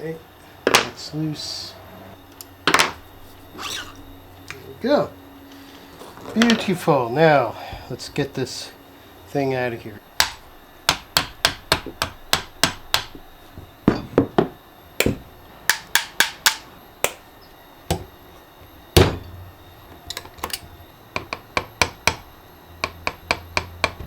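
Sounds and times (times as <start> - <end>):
metal tapping and knocking: 10.2 - 17.2, 22.8 - 24.0.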